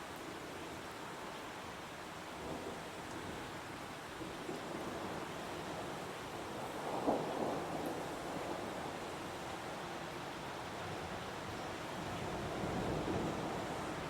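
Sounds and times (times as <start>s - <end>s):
heavy rain falling: 4.2s - 14.0s.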